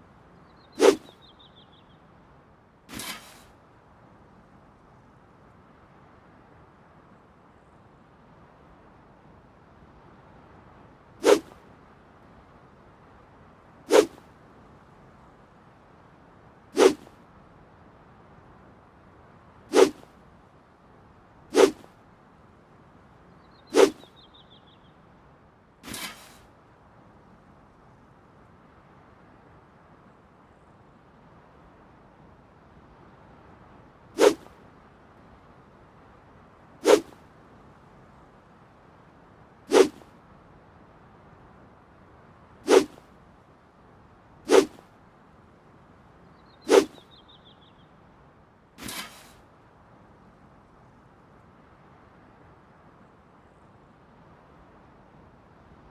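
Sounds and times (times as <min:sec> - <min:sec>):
sword swishing through air: 0:00.8 - 0:01.2, 0:02.9 - 0:03.6, 0:11.2 - 0:11.6, 0:13.9 - 0:14.3, 0:16.8 - 0:17.2, 0:19.7 - 0:20.1, 0:21.5 - 0:21.9, 0:23.7 - 0:24.1, 0:25.8 - 0:26.5, 0:34.2 - 0:34.6, 0:36.8 - 0:37.2, 0:39.7 - 0:40.1, 0:42.6 - 0:43.0, 0:44.5 - 0:44.9, 0:46.7 - 0:47.1, 0:48.8 - 0:49.4.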